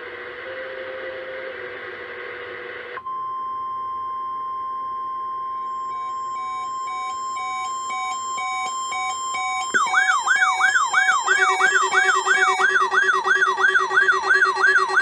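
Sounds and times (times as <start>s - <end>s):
steady warning alarm tone: 5.6s - 15.0s
wailing siren alarm: 5.9s - 15.0s
alert receiver beeping: 6.0s - 15.0s.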